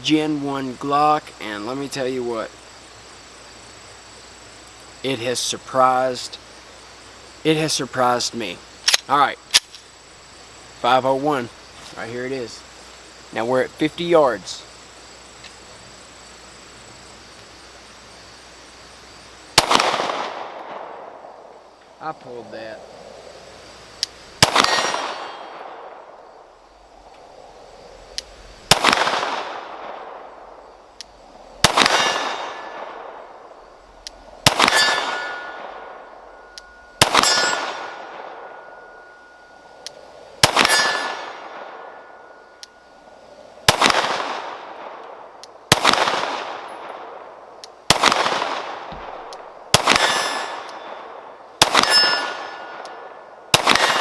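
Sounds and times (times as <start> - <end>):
pistol shots: 19.6 - 21.1, 24.4 - 26.0, 28.7 - 30.3, 31.6 - 33.2, 34.4 - 36.0, 37.0 - 38.6, 40.4 - 41.8, 43.7 - 45.0, 45.7 - 47.0, 47.9 - 52.9, 53.5 - 54.0
steel plate ringing: 36.7 - 37.8, 51.8 - 52.7.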